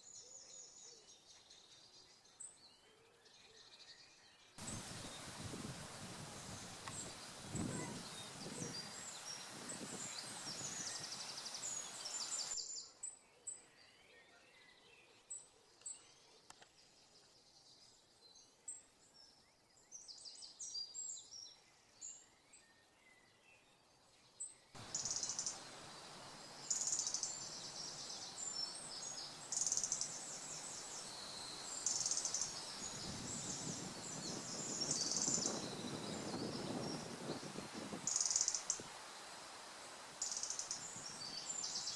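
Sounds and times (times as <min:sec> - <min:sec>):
songbirds singing: 0:00.0 - 0:41.9
steady background hiss: 0:04.6 - 0:12.8, 0:24.8 - 0:41.9.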